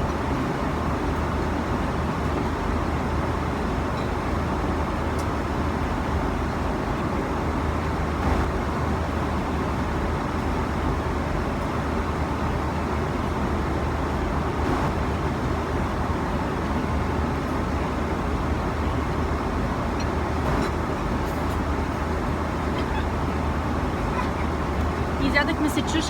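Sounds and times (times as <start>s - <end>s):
airliner cabin engine rumble: 0.0s - 26.0s.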